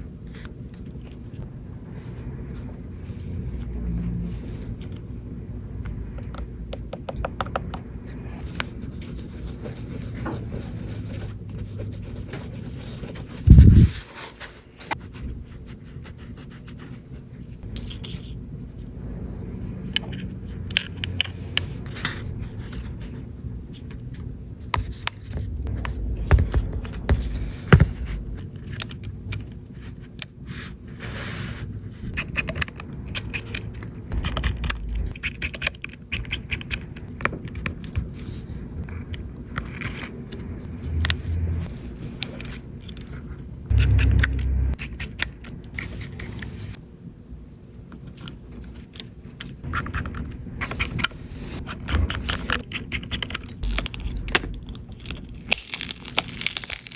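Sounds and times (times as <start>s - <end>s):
low steady hum: 14.8s - 56.8s
loud low thump: 25.4s - 28.6s, 34.1s - 35.2s, 43.7s - 44.8s.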